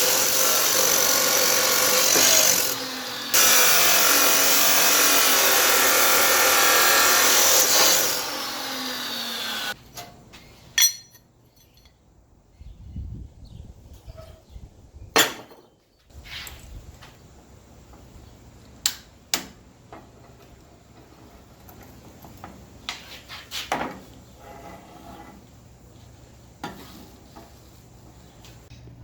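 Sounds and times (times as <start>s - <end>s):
metal knocks and clinks: 10.8s - 12.0s.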